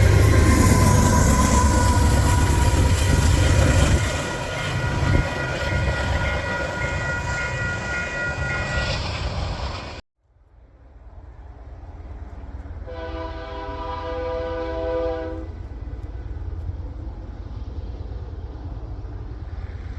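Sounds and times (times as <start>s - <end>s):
freight train rumble: 0.0s - 19.9s
train air horn chord: 12.8s - 15.6s.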